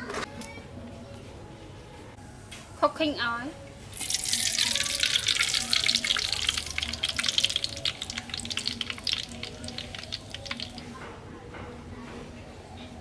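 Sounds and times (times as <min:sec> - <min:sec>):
oil sizzling in a hot pan: 0:03.9 - 0:10.8.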